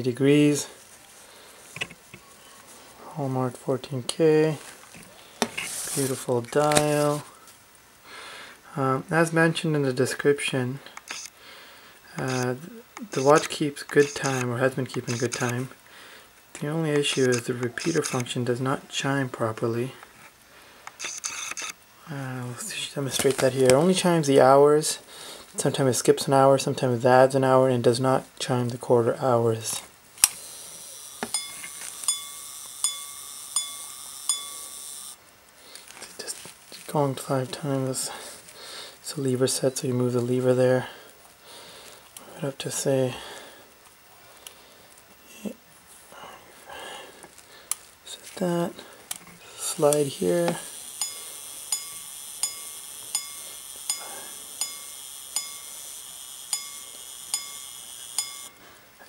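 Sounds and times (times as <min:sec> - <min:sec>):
whir of watch mechanism: 0:20.8 - 0:21.8, 0:30.2 - 0:35.2, 0:49.9 - 0:58.6
pocket watch gong strikes: 0:56.5 - 0:58.5.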